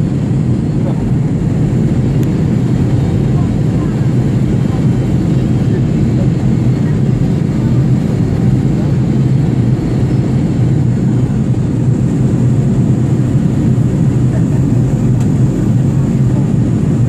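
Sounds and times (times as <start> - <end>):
airliner engine drone: 0.0 - 17.0.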